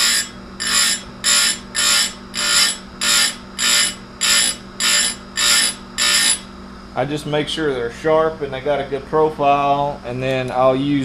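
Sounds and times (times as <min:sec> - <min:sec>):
metal scraping sharpening saw chain: 0:00.0 - 0:06.5.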